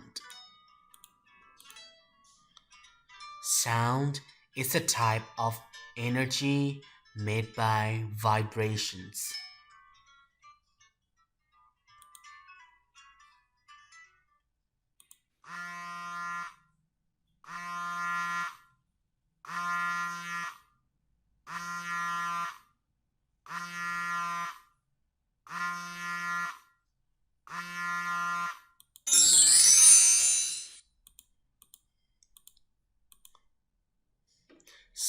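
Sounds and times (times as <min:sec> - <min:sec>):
buzzer tone: 0:15.5 - 0:16.6, 0:23.5 - 0:24.6, 0:25.5 - 0:26.6, 0:27.5 - 0:30.0.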